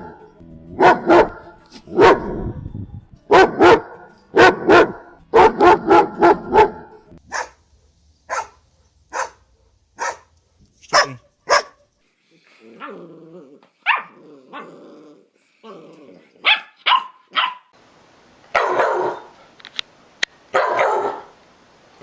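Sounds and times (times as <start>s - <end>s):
dog barking: 0.0s - 2.4s, 3.3s - 7.6s, 8.3s - 11.9s, 13.8s - 14.2s, 16.4s - 17.7s, 18.5s - 19.4s, 20.5s - 21.4s
dog growling: 4.4s - 6.9s, 12.3s - 16.5s.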